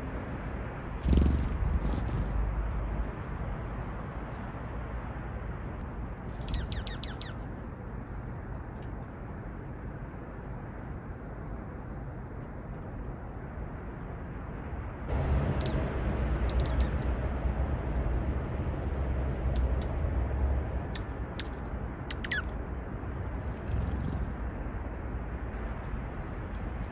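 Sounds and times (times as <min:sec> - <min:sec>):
high-pitched bird chirps: 0:05.8 - 0:09.5, 0:15.3 - 0:15.8, 0:16.5 - 0:17.5, 0:20.9 - 0:22.5.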